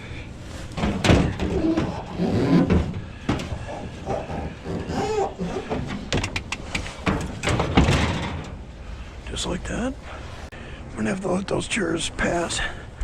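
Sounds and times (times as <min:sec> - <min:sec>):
knocks and clicks: 0:05.7 - 0:08.6.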